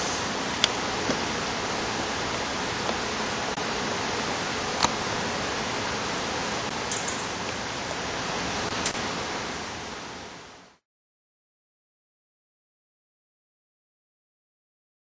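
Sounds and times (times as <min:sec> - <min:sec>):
hiss-like background noise: 0:00.0 - 0:10.8.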